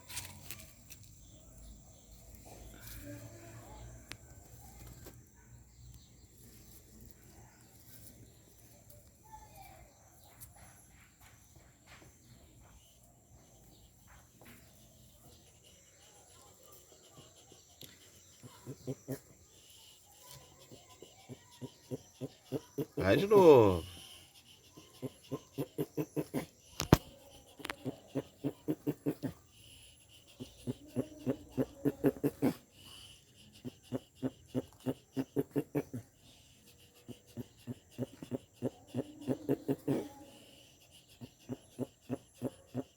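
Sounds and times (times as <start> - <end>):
tortoise grunting: 13.2 - 42.9.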